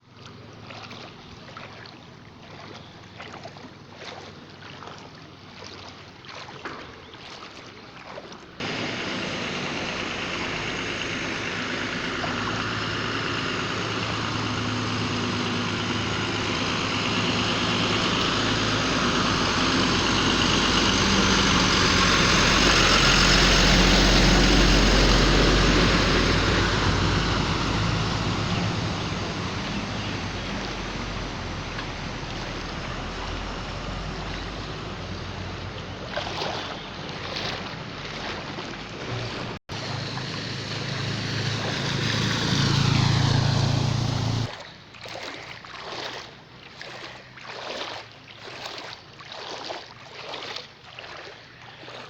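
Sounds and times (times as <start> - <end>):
rushing water: 0.0 - 52.0
motor engine running: 8.6 - 52.0.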